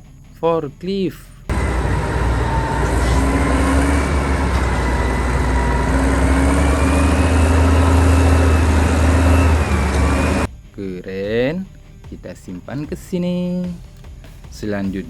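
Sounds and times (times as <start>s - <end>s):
faint wavering whine: 1.5s - 10.5s
vehicle engine running: 1.5s - 10.5s.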